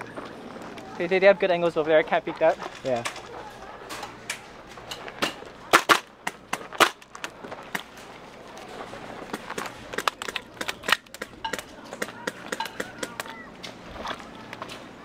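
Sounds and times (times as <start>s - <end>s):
airsoft guns firing: 5.2s - 7.0s, 9.3s - 13.3s.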